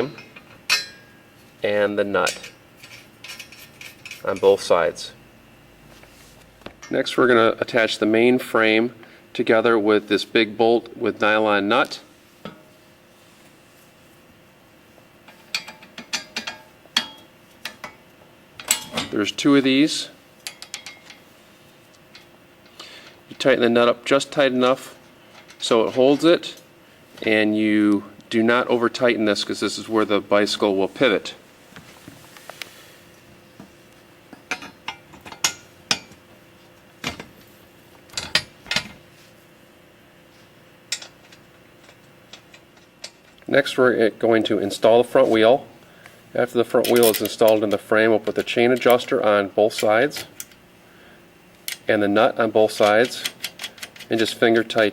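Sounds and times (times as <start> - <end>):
metal frame parts clinking: 0.2 - 1.1, 18.6 - 19.2, 46.8 - 47.4.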